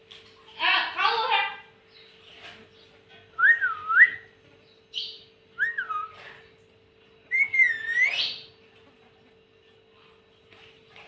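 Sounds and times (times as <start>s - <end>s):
parrot chirp: 7.3s - 8.6s.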